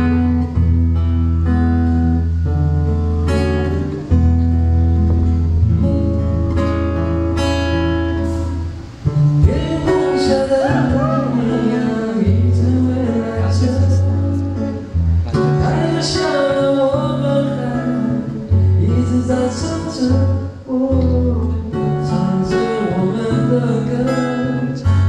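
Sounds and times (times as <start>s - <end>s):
steady bass line: 0.0s - 22.5s
strummed acoustic guitar: 0.0s - 25.0s
wordless singing voice: 9.4s - 25.0s.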